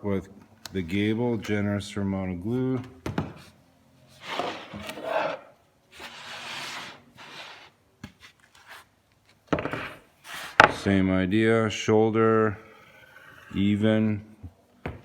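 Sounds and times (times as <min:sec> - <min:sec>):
wooden panels rubbing together: 0:04.1 - 0:07.8, 0:09.6 - 0:10.9.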